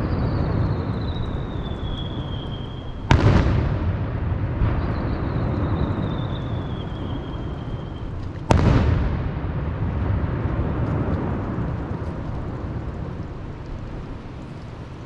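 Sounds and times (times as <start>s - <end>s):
firework bang: 3.0s - 13.1s
low rumble: 3.0s - 15.0s.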